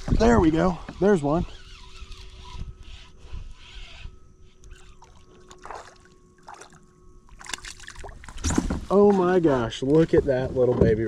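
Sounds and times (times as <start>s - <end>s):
water splashing: 5.0s - 8.5s.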